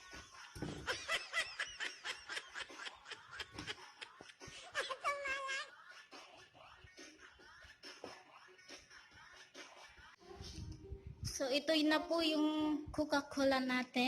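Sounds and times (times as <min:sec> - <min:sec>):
person giggling: 0:00.0 - 0:06.1.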